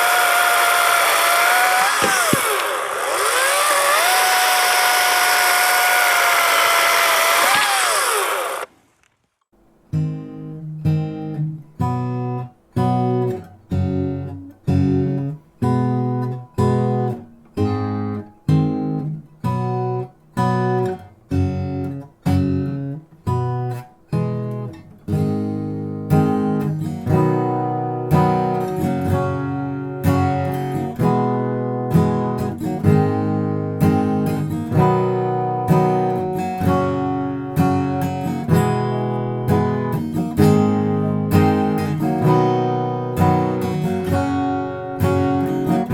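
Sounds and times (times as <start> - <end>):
acoustic guitar strumming: 9.9 - 45.9.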